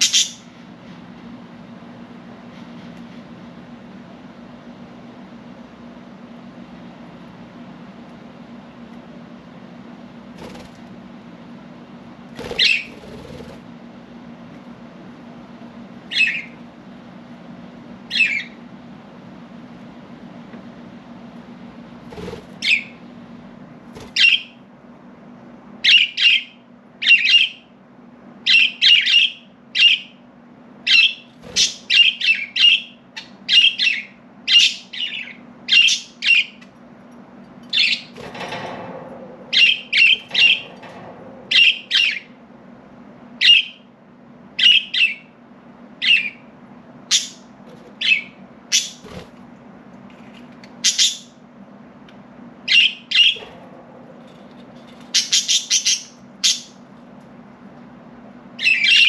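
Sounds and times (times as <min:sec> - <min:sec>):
budgerigars chirping and squawking: 0:00.0 - 0:00.5, 0:12.4 - 0:13.4, 0:16.1 - 0:16.6, 0:18.1 - 0:18.6, 0:22.6 - 0:23.0, 0:24.1 - 0:24.5, 0:30.9 - 0:36.6, 0:37.7 - 0:38.2, 0:39.6 - 0:40.7, 0:41.5 - 0:42.3, 0:43.4 - 0:43.8, 0:44.6 - 0:45.3, 0:46.0 - 0:46.4, 0:47.1 - 0:49.1, 0:50.8 - 0:51.4, 0:52.7 - 0:53.4, 0:55.0 - 0:56.8, 0:58.6 - 0:59.0
low steady hum: 0:00.0 - 0:59.0.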